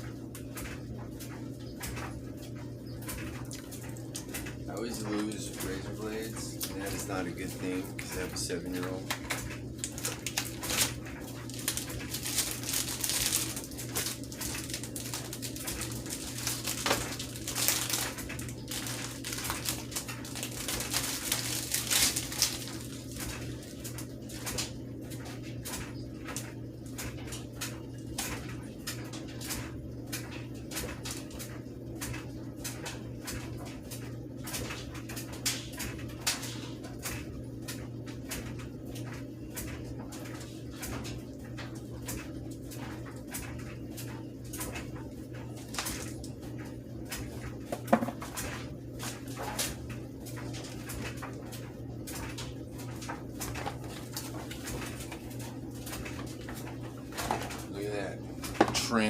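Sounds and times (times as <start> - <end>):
steady low hum: 0.0 - 59.0
packaging rustling and clicking: 8.8 - 24.7.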